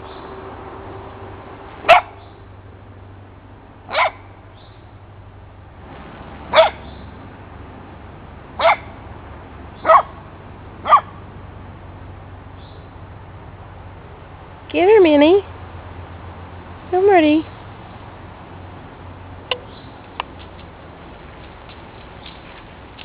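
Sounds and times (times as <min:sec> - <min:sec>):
dog barking: 0:01.9 - 0:02.2, 0:03.9 - 0:04.2, 0:06.5 - 0:06.8, 0:08.6 - 0:08.9, 0:09.8 - 0:10.2, 0:10.8 - 0:11.2.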